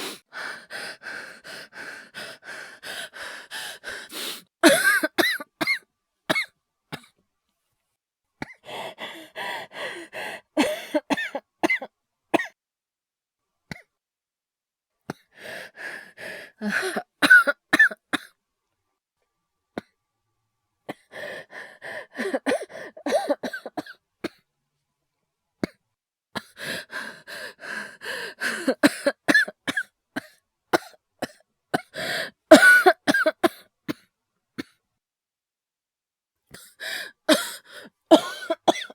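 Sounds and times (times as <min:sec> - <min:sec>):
breaths: 0:00.0 - 0:04.5, 0:08.5 - 0:11.0, 0:15.1 - 0:17.1, 0:20.9 - 0:23.0, 0:26.4 - 0:29.1, 0:31.8 - 0:32.4, 0:36.5 - 0:38.0
man coughing: 0:04.6 - 0:06.5, 0:16.7 - 0:17.9, 0:32.5 - 0:33.5, 0:38.1 - 0:38.9.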